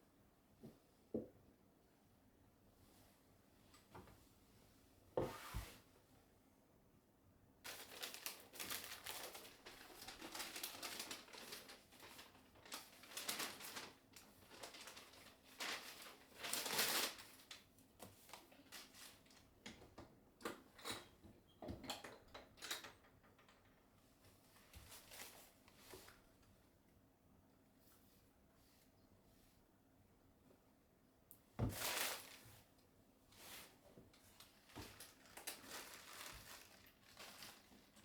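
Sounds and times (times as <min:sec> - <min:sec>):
crinkling and rustling: 0:07.6 - 0:26.6, 0:31.6 - 0:38.0.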